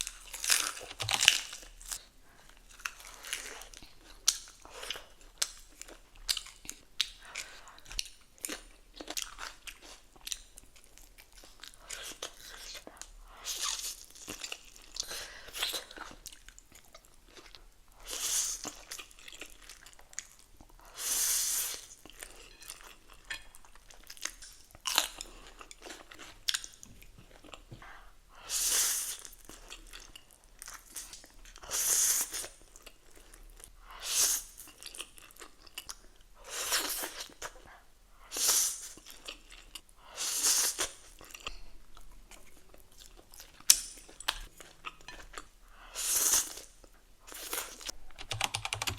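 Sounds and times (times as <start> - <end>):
chewing with wet clicks: 0.0 - 18.0, 18.6 - 20.8, 22.0 - 27.7, 29.2 - 31.6, 34.6 - 36.3, 40.8 - 45.5.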